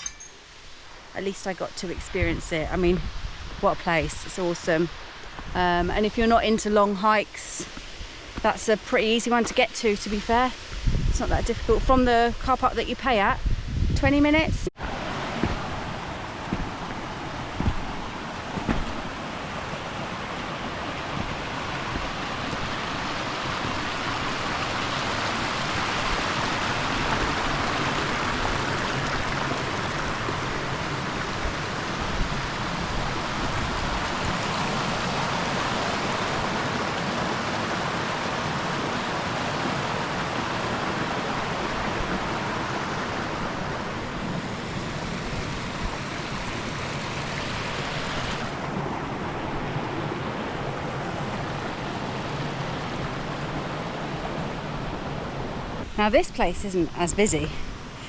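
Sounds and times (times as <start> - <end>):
mountain stream rushing: 14.8 - 58.0.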